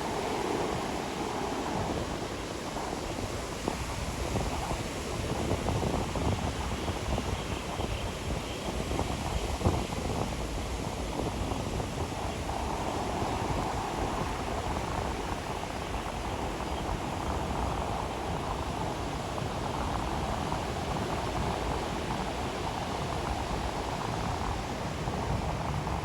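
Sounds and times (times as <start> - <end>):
waves washing on a beach: 0.0 - 26.0.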